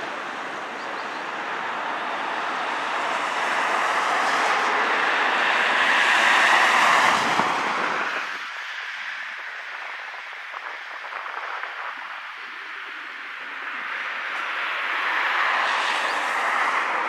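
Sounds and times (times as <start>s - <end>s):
vehicle passing: 0.0s - 8.4s.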